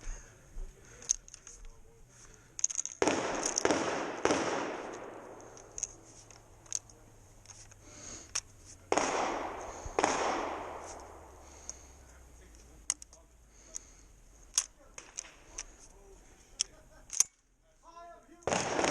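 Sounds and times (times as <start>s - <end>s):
shotgun shots echoing: 3.0s - 6.0s, 8.9s - 11.7s, 18.4s - 18.9s.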